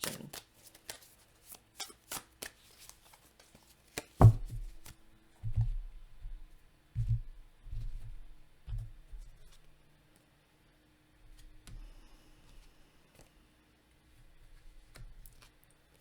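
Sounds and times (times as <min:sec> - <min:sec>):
cards clicking: 0:01.8 - 0:04.2
cards thumping on a table: 0:03.9 - 0:05.0.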